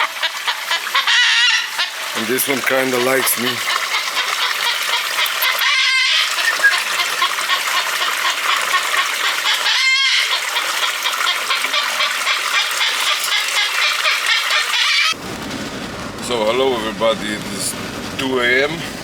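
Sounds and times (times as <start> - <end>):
cockatoos squawking: 0.7 - 15.2.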